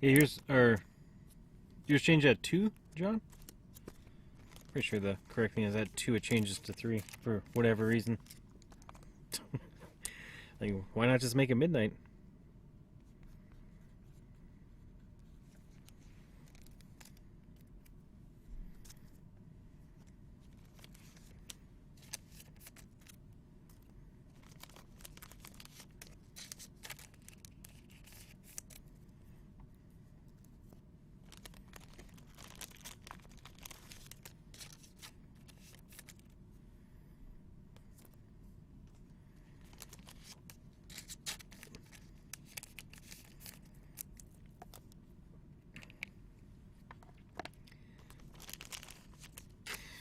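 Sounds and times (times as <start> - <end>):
low room hum: 0.0 - 50.0
card wrappers tearing and rustling: 2.6 - 9.1, 15.8 - 17.8, 20.5 - 28.9, 31.2 - 36.4, 39.6 - 44.9, 48.0 - 50.0.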